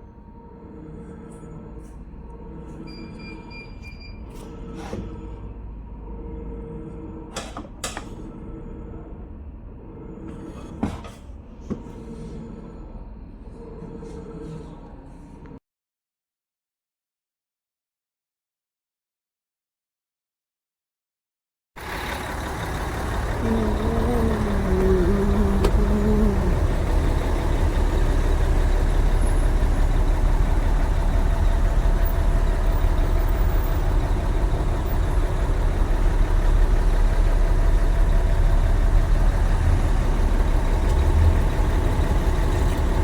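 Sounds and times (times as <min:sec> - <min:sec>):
truck diesel engine rumbling: 0:21.8 - 0:43.0.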